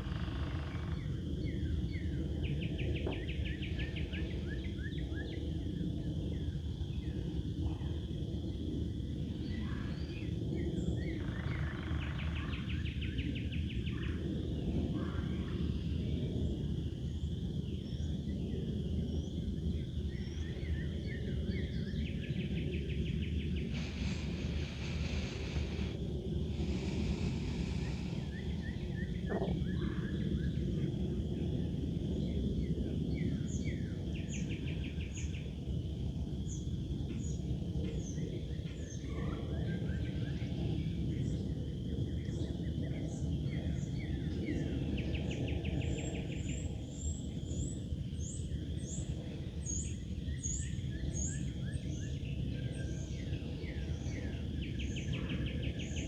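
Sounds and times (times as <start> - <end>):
songbirds chirping: 20.2 - 31.1
low outdoor rush: 23.6 - 29.5.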